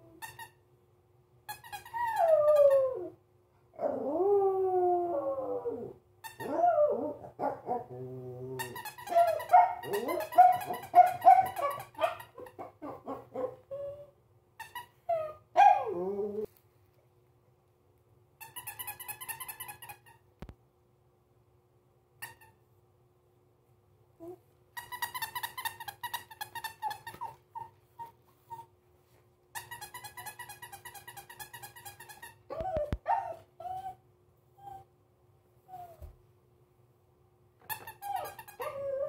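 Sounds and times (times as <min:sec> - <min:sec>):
dog howling and whining: 0:01.9 - 0:03.2, 0:03.8 - 0:14.2, 0:15.0 - 0:16.5, 0:32.5 - 0:34.0, 0:38.0 - 0:39.0.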